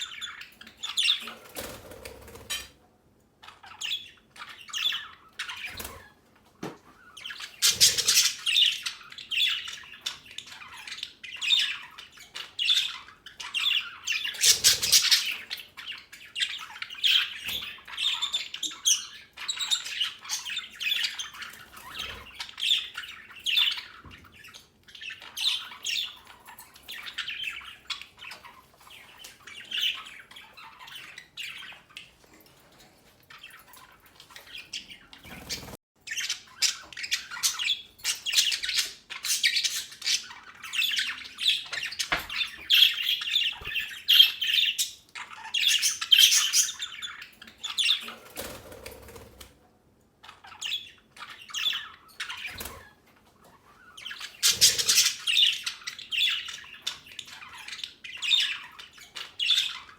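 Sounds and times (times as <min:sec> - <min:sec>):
budgerigars chattering and squawking: 0:00.0 - 0:02.8, 0:03.4 - 0:49.5, 0:50.2 - 0:59.9.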